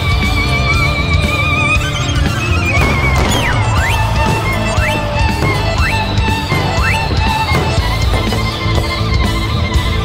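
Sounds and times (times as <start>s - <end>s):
whistling fireworks: 0.0s - 9.7s
loud music: 0.0s - 10.0s.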